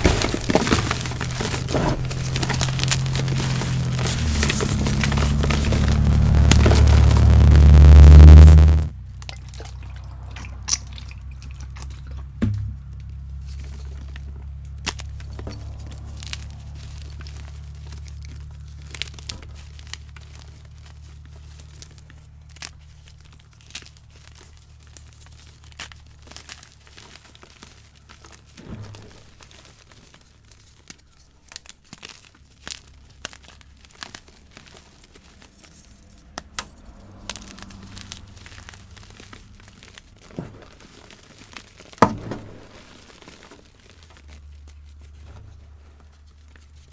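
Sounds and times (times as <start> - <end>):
chalk crunching by hand: 0.0 - 8.9, 36.8 - 44.9
low hum: 0.0 - 9.0.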